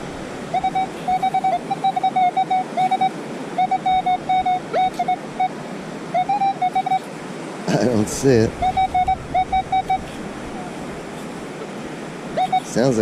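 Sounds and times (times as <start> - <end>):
surf: 0.0 - 13.0
wind noise: 0.0 - 13.0
metal detector pulsing beep: 0.5 - 5.5, 6.2 - 7.0, 8.6 - 10.2, 12.4 - 12.8.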